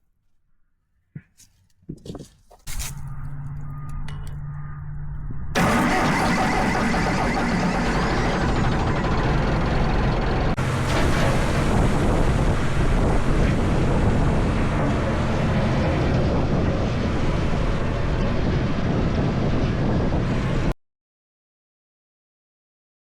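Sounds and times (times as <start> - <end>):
tractor engine running: 5.6 - 19.6
wind buffeting microphone: 10.5 - 20.7.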